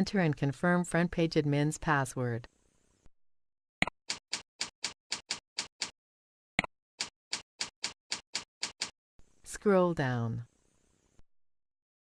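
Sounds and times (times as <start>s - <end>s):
computer keyboard keystrokes: 4.1s - 5.9s, 7.0s - 8.9s.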